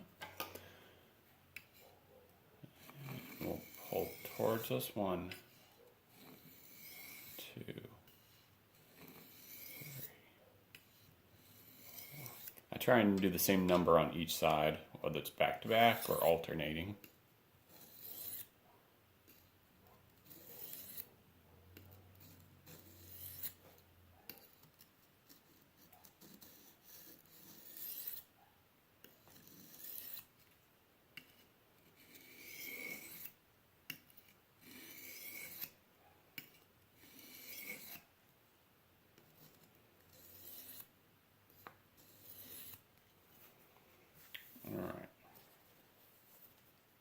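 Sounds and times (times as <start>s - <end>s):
knife scraping on sharpening stone: 2.8s - 7.4s, 8.1s - 10.2s, 10.8s - 12.6s, 15.9s - 16.5s, 17.7s - 18.5s, 20.2s - 21.1s, 22.2s - 23.6s, 24.3s - 28.3s, 29.0s - 30.3s, 31.2s - 33.4s, 34.2s - 35.8s, 36.4s - 38.1s, 39.3s - 40.9s, 41.6s - 42.8s.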